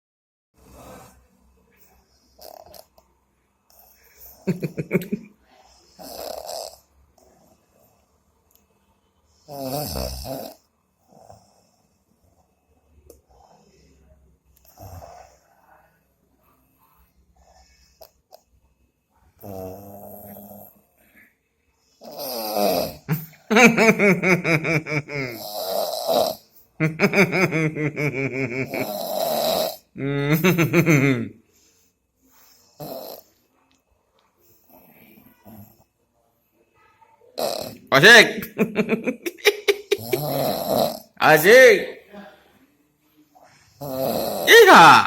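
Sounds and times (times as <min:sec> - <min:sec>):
person snoring: 0:05.9 - 0:07.6, 0:09.4 - 0:11.8, 0:19.4 - 0:20.8, 0:22.0 - 0:31.3, 0:32.8 - 0:33.3, 0:37.4 - 0:41.8, 0:43.4 - 0:45.0.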